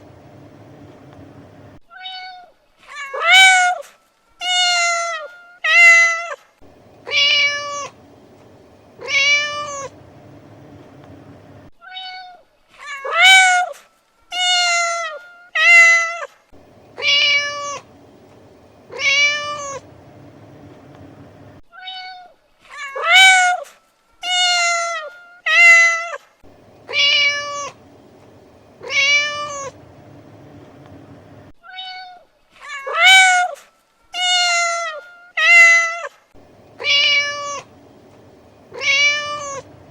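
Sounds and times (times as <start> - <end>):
cats meowing: 7.0 - 8.0, 9.0 - 10.0, 17.0 - 17.9, 18.9 - 19.9, 26.9 - 27.8, 28.8 - 29.8, 36.8 - 37.7, 38.7 - 39.8.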